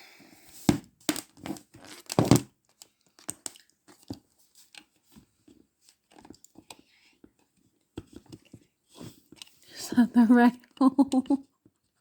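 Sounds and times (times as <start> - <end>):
plastic rustling and clicking: 1.1 - 9.6.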